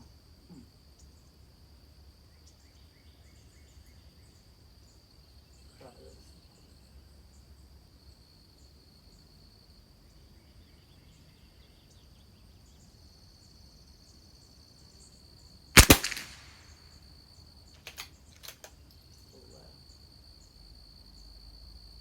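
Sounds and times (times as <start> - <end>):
rifle shot: 15.8 - 16.7.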